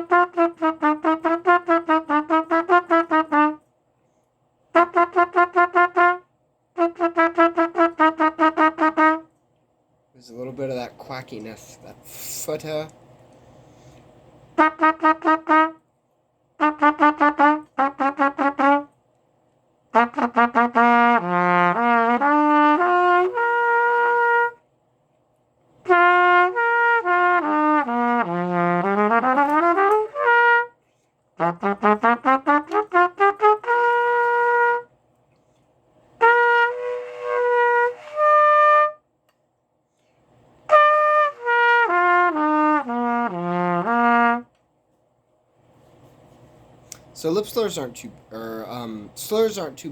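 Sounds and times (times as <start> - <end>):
solo trumpet playing: 0.0 - 3.7, 4.7 - 9.4, 14.5 - 15.9, 16.6 - 19.0, 19.9 - 24.7, 25.8 - 35.0, 36.1 - 39.2, 40.6 - 44.6.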